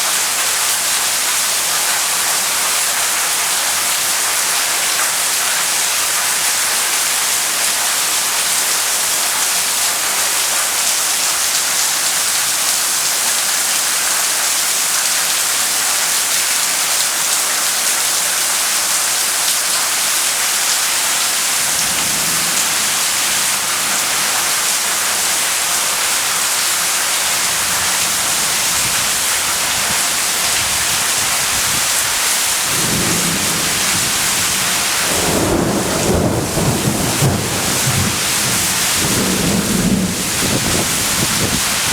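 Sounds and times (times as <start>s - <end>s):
heavy rain pouring: 0.0s - 41.9s
thunder rumbling: 20.8s - 41.9s.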